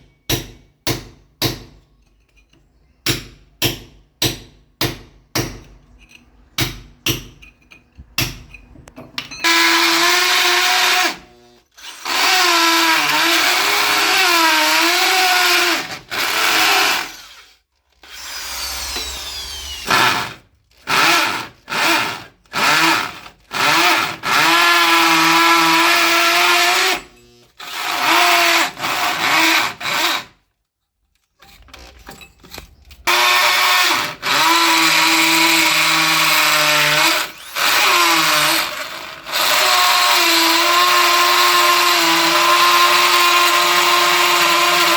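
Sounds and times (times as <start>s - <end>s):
hammer strikes: 0.0s - 1.8s, 3.0s - 5.8s, 6.6s - 9.5s
electric drill boring into concrete: 9.4s - 30.3s, 33.1s - 44.9s.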